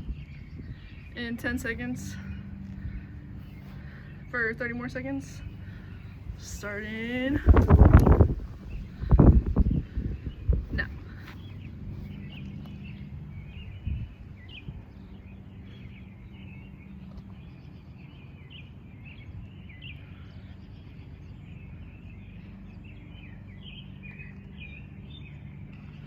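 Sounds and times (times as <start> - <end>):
small birds chirping: 0.0 - 26.0
steady low hum: 0.0 - 26.0.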